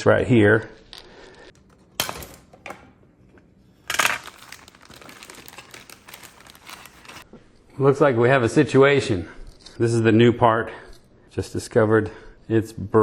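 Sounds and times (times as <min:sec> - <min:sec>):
crinkly rustling: 0:03.9 - 0:07.2.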